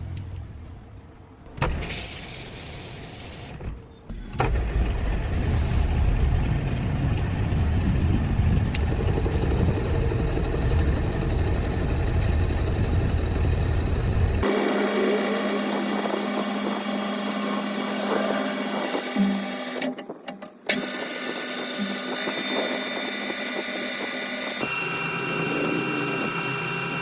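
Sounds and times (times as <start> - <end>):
machine motor running: 7.8 - 20.0, 20.7 - 27.0.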